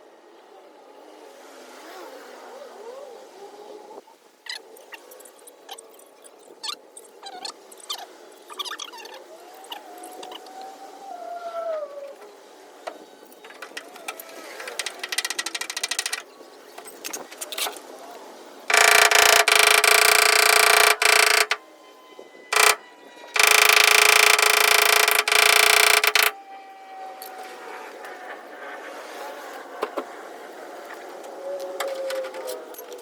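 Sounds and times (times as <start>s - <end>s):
rapid light ticking: 18.7s - 21.6s, 22.5s - 22.8s, 23.4s - 26.3s.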